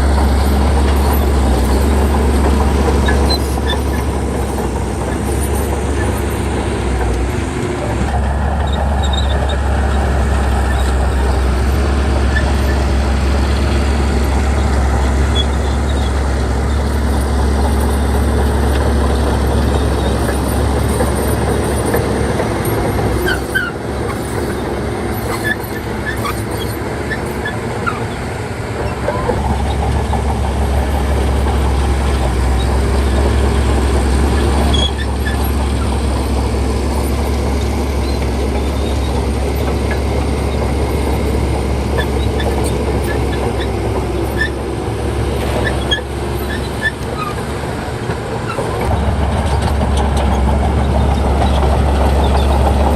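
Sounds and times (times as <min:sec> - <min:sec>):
heavy diesel engine drone: 0:00.0 - 0:52.9.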